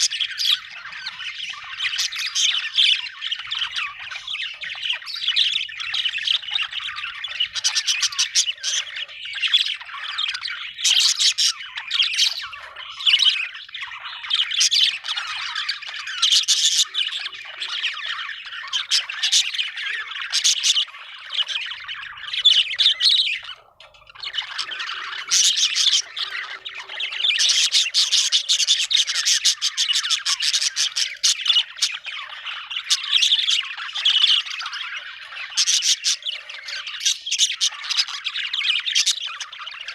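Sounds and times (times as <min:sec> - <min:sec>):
budgerigar chattering and chirping: 0:00.0 - 0:39.9.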